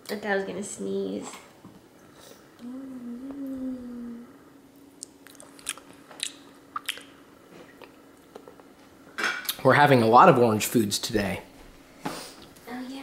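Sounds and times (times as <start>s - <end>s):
person humming: 2.6s - 4.5s.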